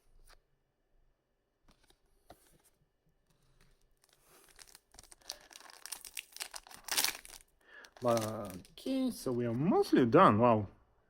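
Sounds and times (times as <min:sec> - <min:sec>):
foil pack crinkling and tearing: 0:04.0 - 0:08.8.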